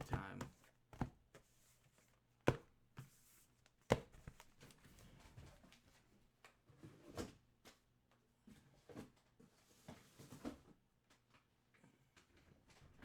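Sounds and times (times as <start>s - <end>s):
card boxes knocking on table: 0.0s - 1.2s.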